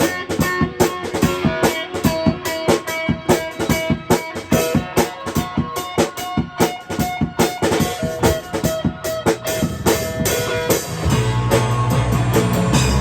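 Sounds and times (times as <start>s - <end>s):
drum kit beat with cymbals: 0.0s - 13.0s
ringing electric guitar: 0.0s - 13.0s
low bass notes: 10.9s - 13.0s.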